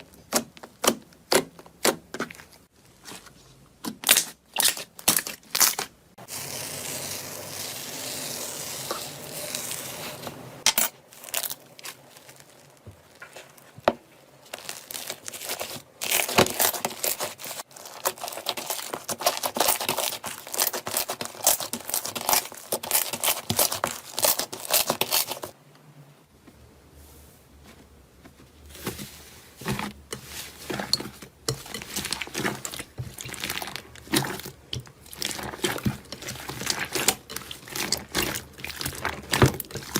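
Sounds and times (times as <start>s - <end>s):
slime crackling and popping: 31.6s - 39.9s.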